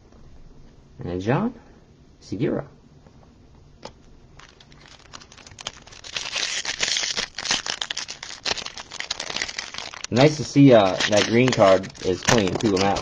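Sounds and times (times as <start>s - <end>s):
plastic wrapper crinkling: 4.4s - 13.0s.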